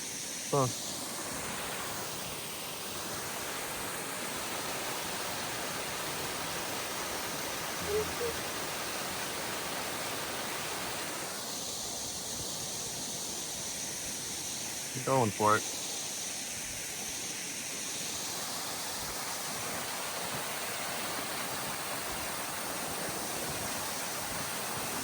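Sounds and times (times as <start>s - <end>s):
short faint blips: 7.8s - 8.5s.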